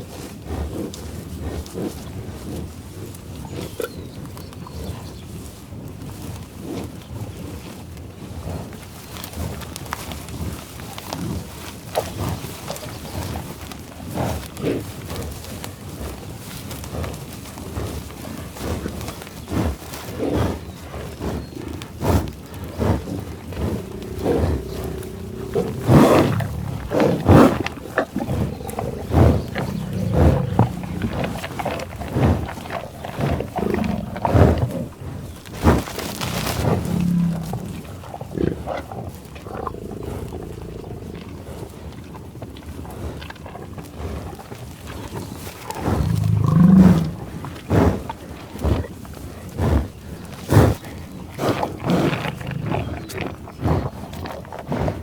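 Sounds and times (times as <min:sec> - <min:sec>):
buffalo grunting and bellowing: 0:15.9 - 0:55.0.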